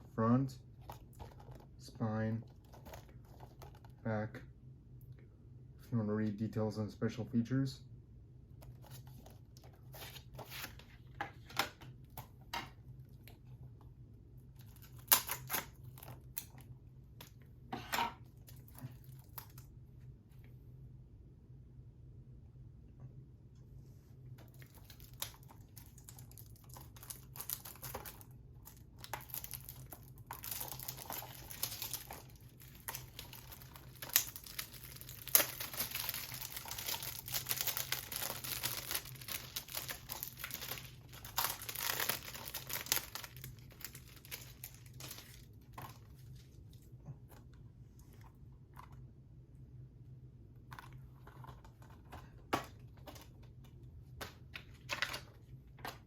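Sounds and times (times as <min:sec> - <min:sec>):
plastic wrap tearing and crinkling: 0:14.6 - 0:16.6, 0:24.5 - 0:46.5.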